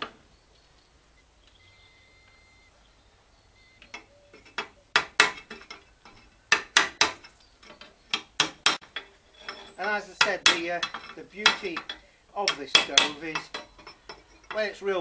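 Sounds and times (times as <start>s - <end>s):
metal tool knocking and scraping: 3.9s - 14.8s.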